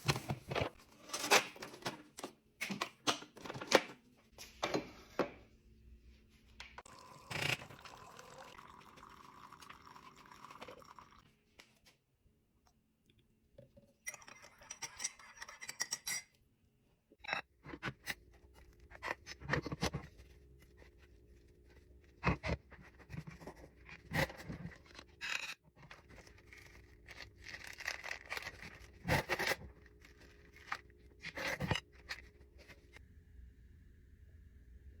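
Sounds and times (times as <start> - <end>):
low steady hum: 17.6 - 35.0.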